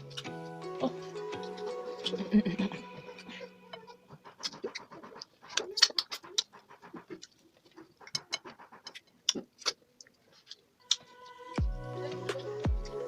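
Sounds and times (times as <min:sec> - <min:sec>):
person chewing and swallowing: 0:04.2 - 0:11.0
wet lip and mouth smacks: 0:04.4 - 0:10.6.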